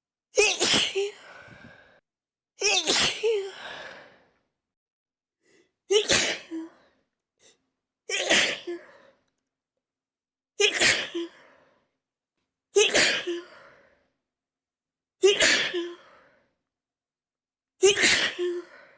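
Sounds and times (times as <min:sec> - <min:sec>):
person sneezing: 0:00.4 - 0:01.2, 0:02.6 - 0:03.8, 0:05.9 - 0:06.6, 0:08.1 - 0:08.8, 0:10.6 - 0:11.3, 0:12.8 - 0:13.4, 0:15.2 - 0:16.0.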